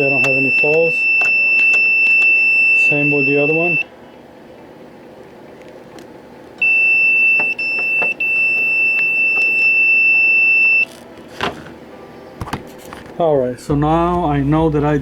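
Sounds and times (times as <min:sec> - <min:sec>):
continuity tester high beep: 0:00.0 - 0:03.9, 0:06.6 - 0:10.9.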